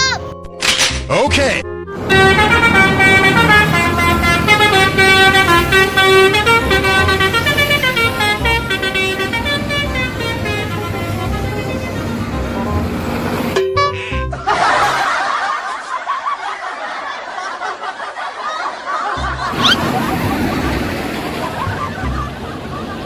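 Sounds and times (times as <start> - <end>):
bus horn playing a tune: 1.8 - 14.4.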